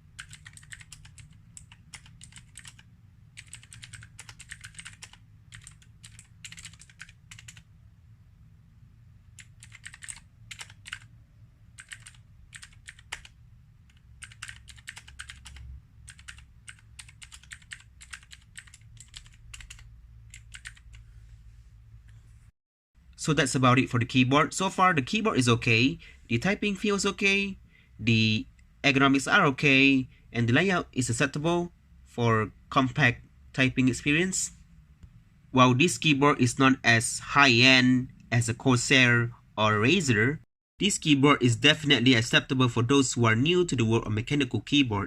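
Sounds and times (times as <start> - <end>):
low steady hum: 0.0 - 45.0
mechanical keyboard typing: 0.1 - 7.7, 9.3 - 11.1, 11.8 - 21.0.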